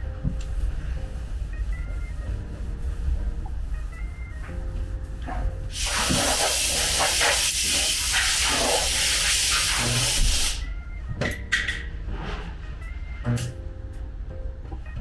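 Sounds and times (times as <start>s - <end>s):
compressed air hissing: 5.7s - 10.7s.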